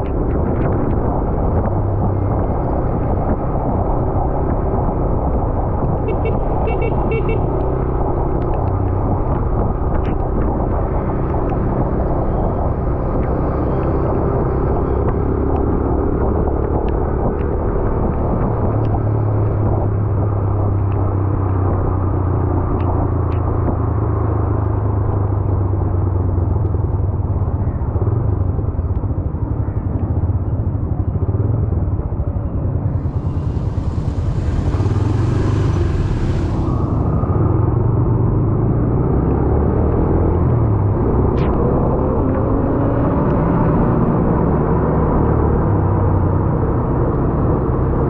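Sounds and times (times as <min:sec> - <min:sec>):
motorcycle engine rumbling: 0:27.3 - 0:39.1.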